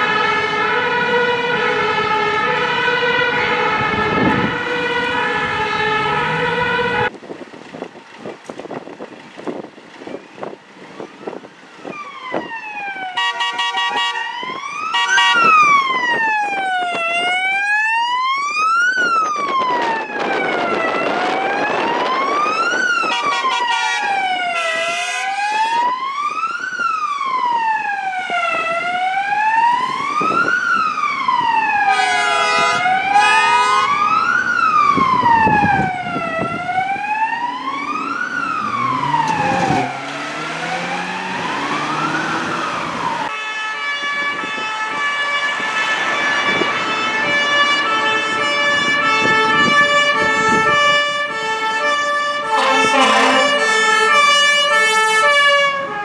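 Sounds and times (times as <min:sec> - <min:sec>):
fire engine siren wailing: 0:00.0 - 0:07.2, 0:09.6 - 0:56.0
truck engine: 0:00.0 - 0:17.6, 0:28.0 - 0:56.0
air horn blasts: 0:13.2 - 0:15.7, 0:23.0 - 0:25.8, 0:31.9 - 0:34.0, 0:50.4 - 0:55.8.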